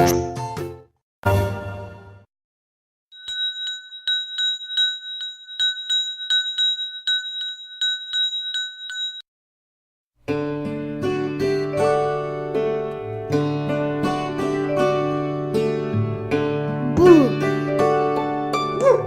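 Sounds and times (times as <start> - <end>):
music: 0.0 - 2.3, 10.3 - 19.0
bell ringing rapidly: 3.2 - 9.2.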